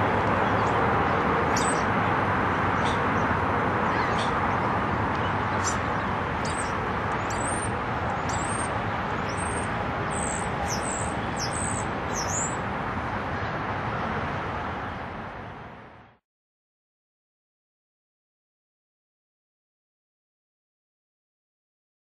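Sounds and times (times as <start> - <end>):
city and construction noise: 0.0 - 16.2
small birds chirping: 0.3 - 12.7.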